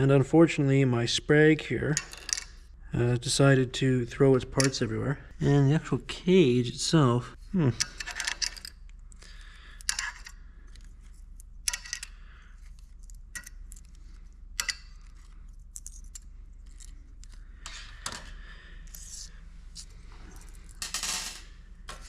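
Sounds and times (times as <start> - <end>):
steel pieces clinking: 1.9 - 2.7, 7.8 - 21.6.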